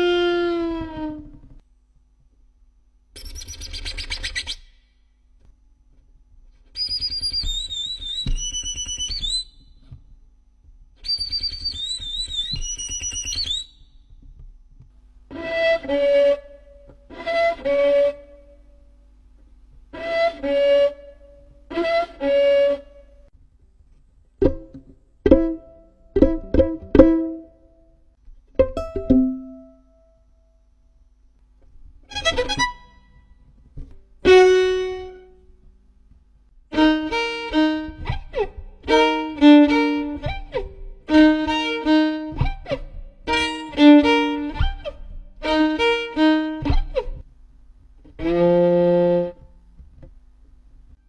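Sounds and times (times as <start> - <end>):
gliding violin notes: 0.0 - 1.6, 15.3 - 18.8, 19.9 - 23.2, 28.6 - 30.0, 32.1 - 33.5, 34.2 - 35.4, 36.7 - 47.2, 48.2 - 49.5
plucked pizzicato violin notes: 0.0 - 1.6, 15.3 - 18.8, 19.9 - 23.1, 24.4 - 27.7, 28.5 - 30.2, 32.0 - 35.4, 36.7 - 47.2, 48.1 - 50.0
scratchy bowed violin: 0.0 - 1.6, 11.3 - 13.8, 15.3 - 18.8, 19.9 - 23.3, 32.0 - 35.4, 36.7 - 47.3, 48.1 - 49.9.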